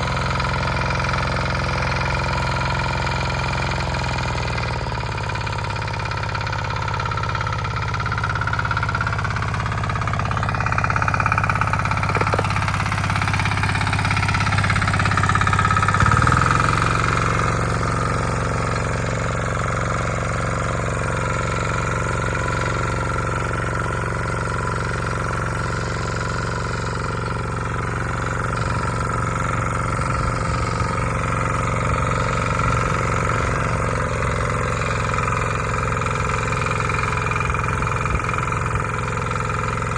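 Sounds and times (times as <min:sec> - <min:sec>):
motor hoe engine running: 0:00.0 - 0:39.9.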